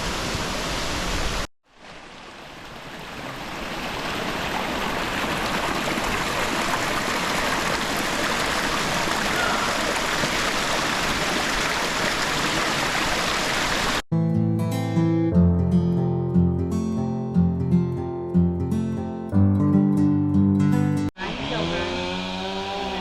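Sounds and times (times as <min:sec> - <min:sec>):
stream water rushing: 0:00.0 - 0:14.0.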